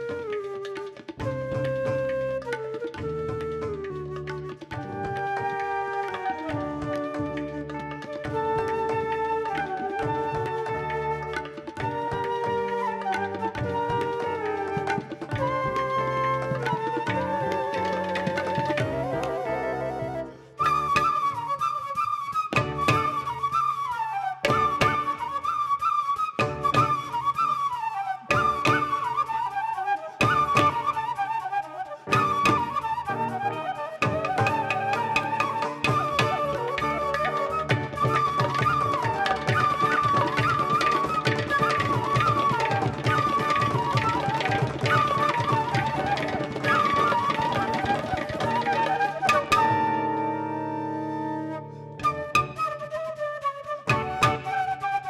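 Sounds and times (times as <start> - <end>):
hand drum percussion: 0.0 - 50.3, 52.0 - 55.0
flute-like wind melody: 0.0 - 55.0.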